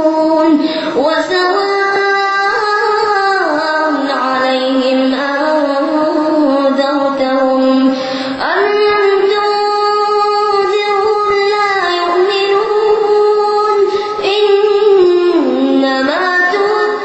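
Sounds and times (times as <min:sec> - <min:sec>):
boy chanting melodically: 0:00.0 - 0:17.0.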